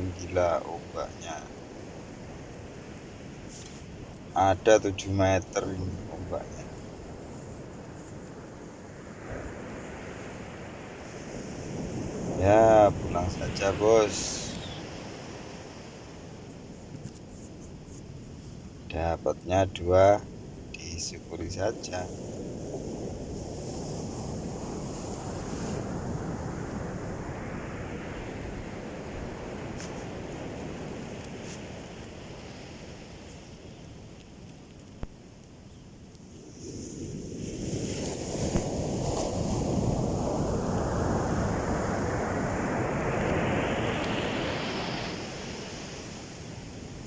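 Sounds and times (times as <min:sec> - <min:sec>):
ocean surf breaking: 0:00.0 - 0:17.2, 0:18.4 - 0:33.7, 0:36.5 - 0:47.0
wind on microphone: 0:05.0 - 0:18.8, 0:36.4 - 0:47.0.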